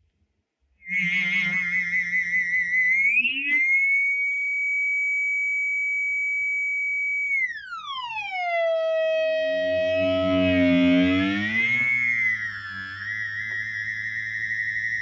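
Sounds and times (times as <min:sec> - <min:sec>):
high whistle-like oscillating tone: 0:00.8 - 0:15.0
lower notes: 0:08.3 - 0:15.0.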